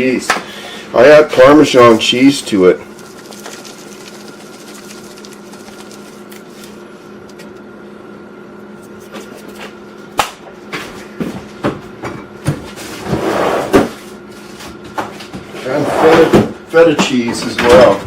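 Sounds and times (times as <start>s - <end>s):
steady hum: 0.4s - 13.0s.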